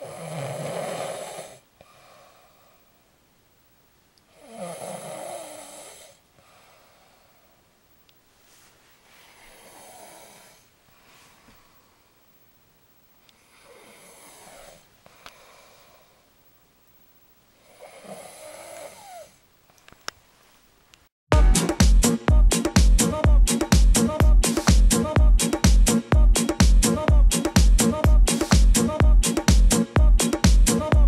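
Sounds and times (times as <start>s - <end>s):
man snoring: 0.0s - 2.7s, 4.3s - 6.7s, 9.4s - 10.7s, 13.4s - 14.9s, 17.6s - 19.4s.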